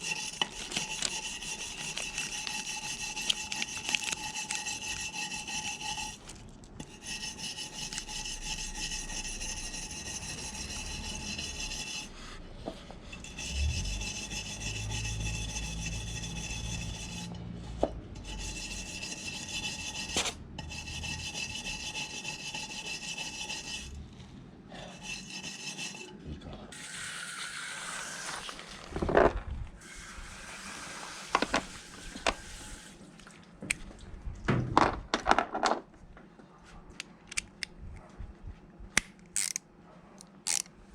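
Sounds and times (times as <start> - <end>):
rasping scrape: 0.0 - 26.3.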